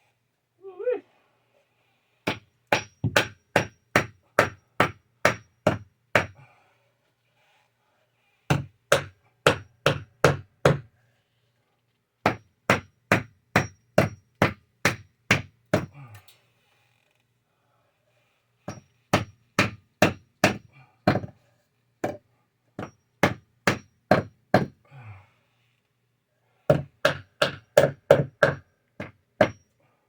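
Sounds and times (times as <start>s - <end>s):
hammer nailing wood: 2.2s - 6.4s, 8.5s - 10.9s, 12.2s - 16.0s, 18.7s - 21.4s, 22.0s - 22.2s, 22.8s - 24.8s, 26.7s - 29.6s.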